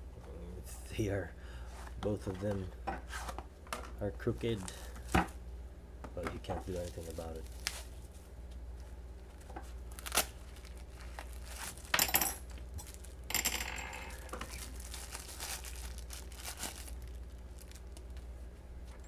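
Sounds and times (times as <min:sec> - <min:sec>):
plastic packaging rustling: 0:06.5 - 0:08.2, 0:09.2 - 0:13.3, 0:14.2 - 0:18.3.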